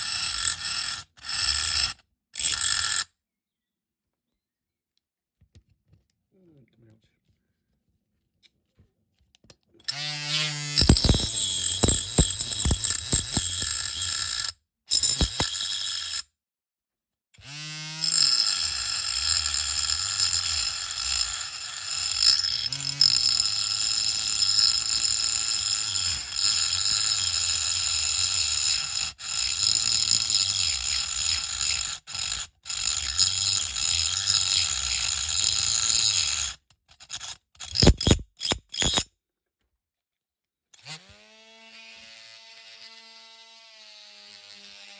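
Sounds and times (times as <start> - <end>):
rotary tool whining cutting metal: 0.0 - 3.1, 9.8 - 16.2, 17.4 - 39.1, 40.8 - 44.9.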